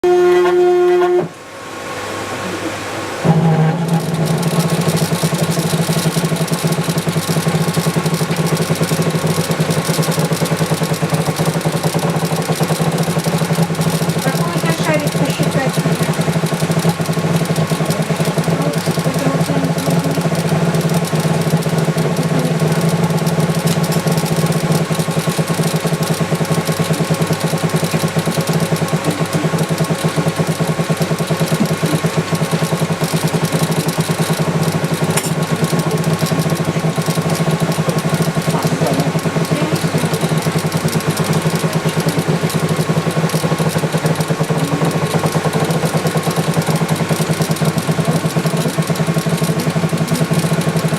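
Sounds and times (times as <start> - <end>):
laser engraving machine humming: 0.0 - 50.9.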